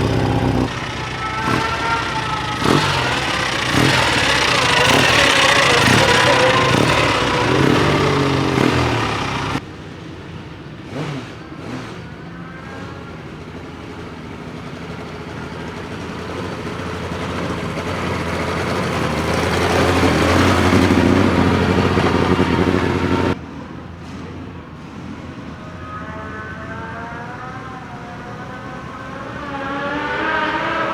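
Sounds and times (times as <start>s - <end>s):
racing sidecars passing at speed: 0.0s - 10.2s, 10.8s - 23.4s, 28.4s - 30.9s.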